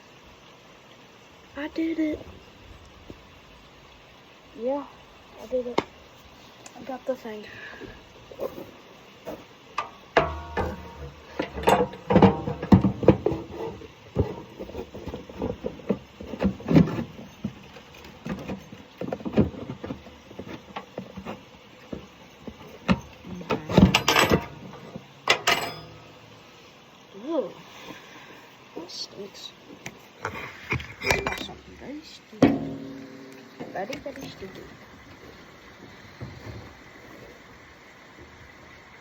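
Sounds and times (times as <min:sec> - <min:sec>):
tools and parts clanking: 0:09.3 - 0:26.4, 0:30.7 - 0:31.7, 0:32.4 - 0:34.8.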